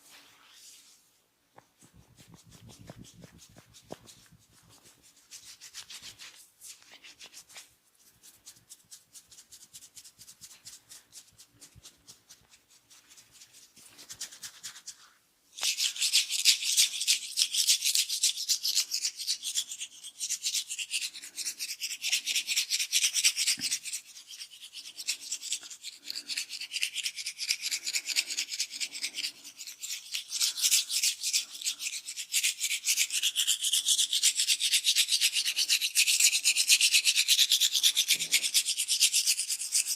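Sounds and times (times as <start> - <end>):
hands scratching through hair: 0.0 - 17.0.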